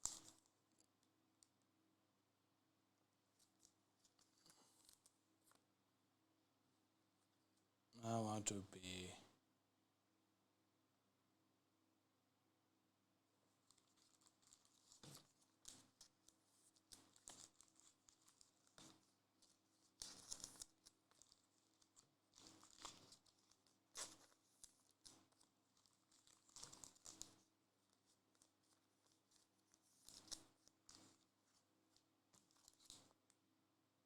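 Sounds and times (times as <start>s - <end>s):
cards and plastic packaging crinkling: 13.7s - 31.3s.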